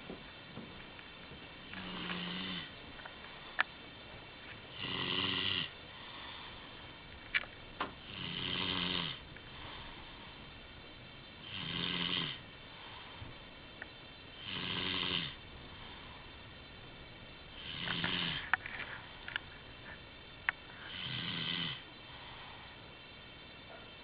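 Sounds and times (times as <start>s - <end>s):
quiet breaths: 0.0s - 24.0s
loud rasping snores: 1.8s - 2.7s, 4.7s - 6.3s, 8.0s - 9.2s, 11.4s - 12.4s, 14.4s - 15.4s, 17.6s - 18.4s, 20.9s - 21.9s.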